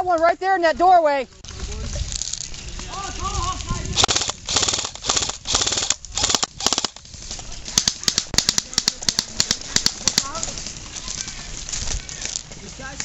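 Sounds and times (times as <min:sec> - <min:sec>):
airsoft guns firing: 0:04.0 - 0:07.0, 0:07.8 - 0:10.4.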